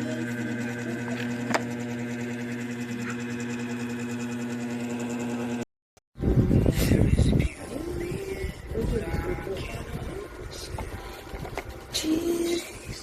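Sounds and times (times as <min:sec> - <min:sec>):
small electric motor humming: 0:00.0 - 0:05.6.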